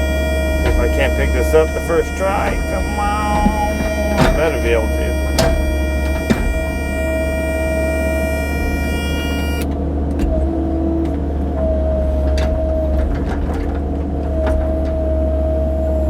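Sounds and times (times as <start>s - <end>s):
diesel engine running under load: 0.0s - 9.7s
hydraulic whine: 0.0s - 10.4s.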